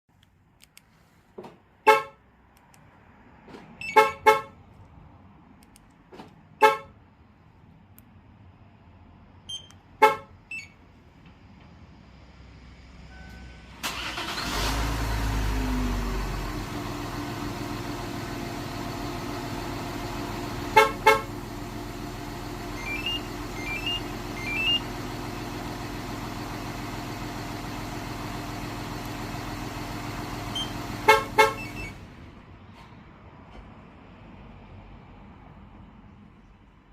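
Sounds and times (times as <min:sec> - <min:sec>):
car horn chirps: 0:01.8 - 0:02.2, 0:03.8 - 0:04.6, 0:06.6 - 0:07.0, 0:09.5 - 0:10.8, 0:20.7 - 0:21.4, 0:30.5 - 0:32.0
car engine starting and idling: 0:13.1 - 0:33.0.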